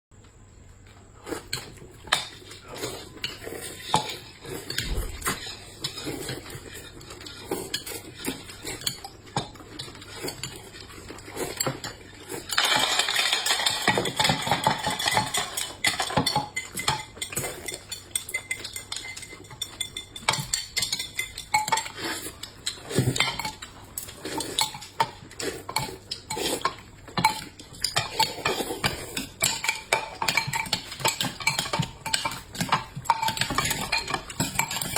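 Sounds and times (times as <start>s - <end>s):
cutlery clinking on plates: 11.4s - 34.9s.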